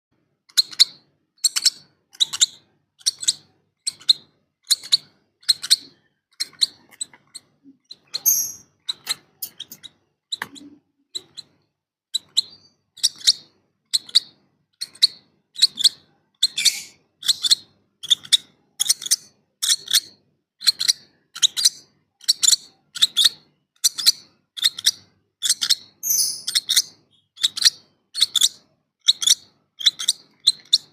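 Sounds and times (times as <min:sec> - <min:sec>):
chicks chirping: 0:07.9 - 0:11.5, 0:15.8 - 0:17.5, 0:25.6 - 0:28.5.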